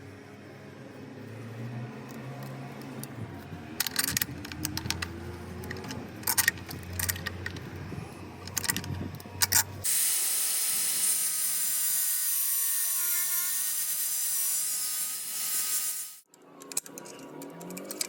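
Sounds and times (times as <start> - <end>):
tool handling clicks and knocks: 2.1 - 9.8, 16.3 - 18.0
small power tool whining: 9.8 - 16.2.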